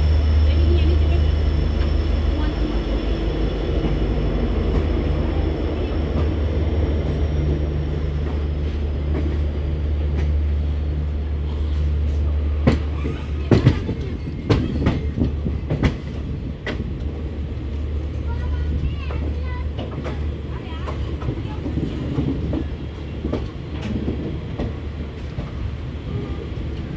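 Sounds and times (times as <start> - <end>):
passenger train rumbling past: 0.0 - 26.9
wheels clacking over rail joints: 11.7 - 26.9.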